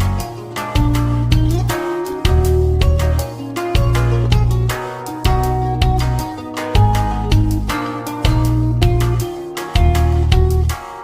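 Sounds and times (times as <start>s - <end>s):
background music with beat and bass: 0.0s - 11.0s
plucked guitar-like notes: 0.0s - 11.0s.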